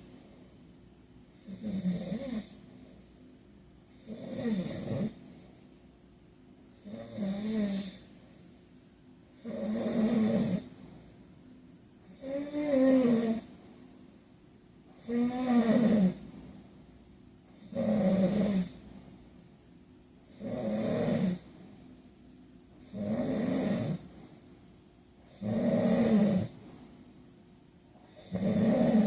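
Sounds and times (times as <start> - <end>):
man snoring: 1.4 - 2.6, 3.9 - 5.2, 6.8 - 8.1, 9.4 - 10.7, 12.1 - 13.5, 15.0 - 16.2, 17.5 - 18.8, 20.3 - 21.5, 22.8 - 24.1, 25.3 - 26.6, 28.0 - 29.0.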